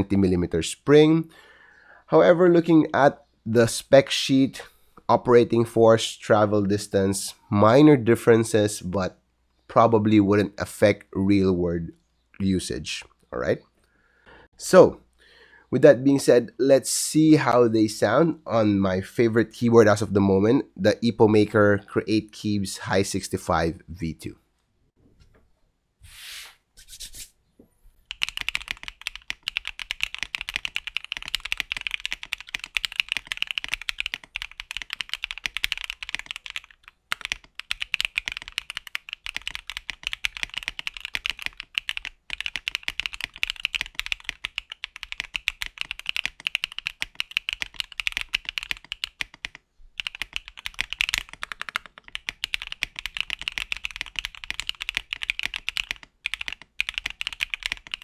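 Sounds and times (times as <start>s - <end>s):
fast mechanical keyboard typing: 28.1s - 58.0s.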